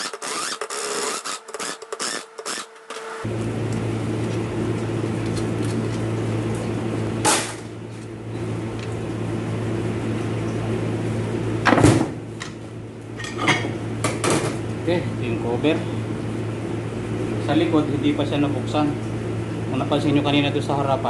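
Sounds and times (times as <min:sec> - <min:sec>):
low machine hum: 0:00.0 - 0:21.0.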